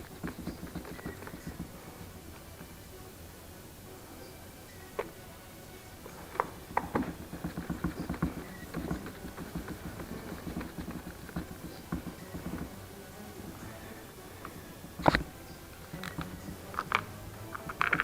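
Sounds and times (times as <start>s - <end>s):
taps and scraping rattles: 0.0s - 2.8s, 6.0s - 13.8s, 14.4s - 18.0s.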